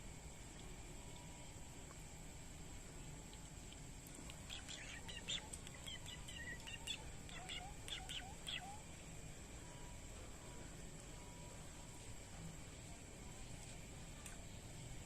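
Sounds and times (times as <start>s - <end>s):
birds chirping: 4.3s - 8.8s.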